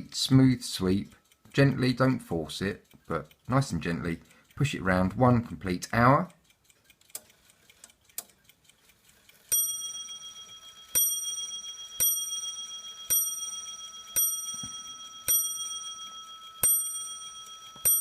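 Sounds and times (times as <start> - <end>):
clock movement clicking: 0.0 - 18.0
clock striking a bell: 9.5 - 18.0.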